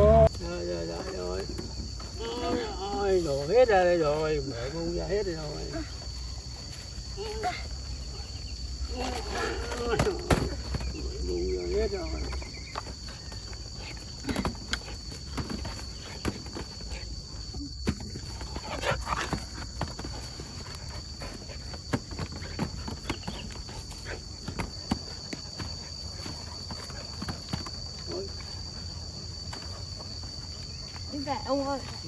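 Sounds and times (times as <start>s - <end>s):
handling knocks and rustles: 9.0s - 28.3s.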